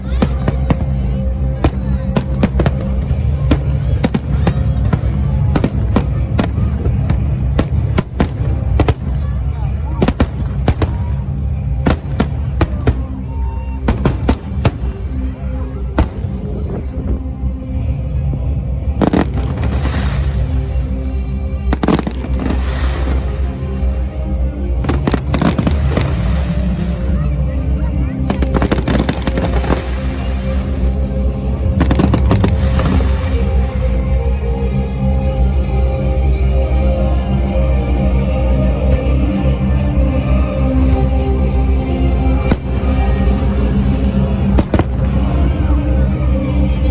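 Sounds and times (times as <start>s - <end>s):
fireworks bursting with hiss: 0.0s - 9.2s, 19.0s - 20.8s, 21.6s - 23.5s, 24.7s - 27.1s, 28.2s - 34.1s
low rumble: 0.0s - 46.9s
fireworks bangs: 11.8s - 13.3s, 13.9s - 15.0s, 28.2s - 33.7s.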